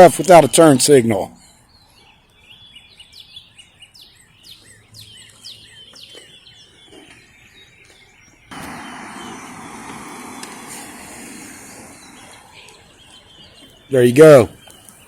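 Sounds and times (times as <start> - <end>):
small birds chirping: 0.0 - 15.0
steady rushing noise: 8.5 - 13.0.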